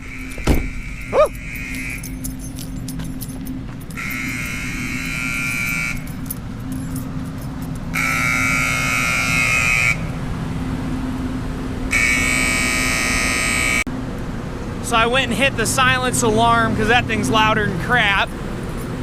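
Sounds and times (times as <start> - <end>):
alarm buzzer blasts: 0.0 - 2.6, 3.9 - 6.3, 7.9 - 10.2, 11.9 - 13.9
steady low hum: 0.0 - 19.0.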